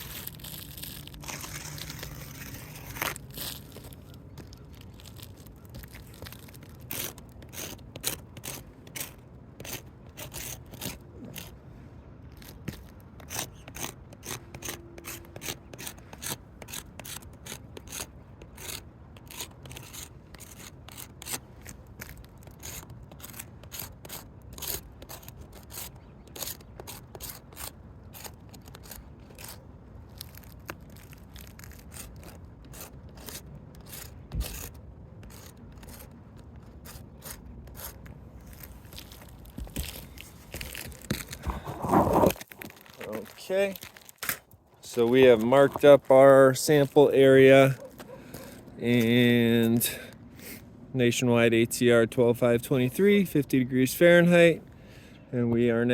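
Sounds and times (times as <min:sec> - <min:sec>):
scraping on roof shingles: 0:38.5 - 0:44.4.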